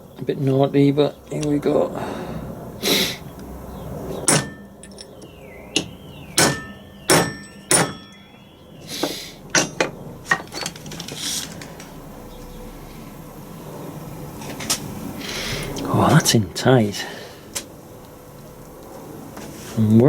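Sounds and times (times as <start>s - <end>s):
hammer blows on metal: 4.3s - 9.9s.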